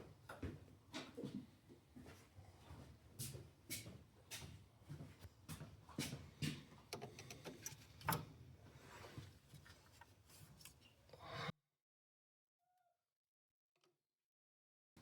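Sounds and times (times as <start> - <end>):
metal wire clicking and scraping: 6.9 - 8.3.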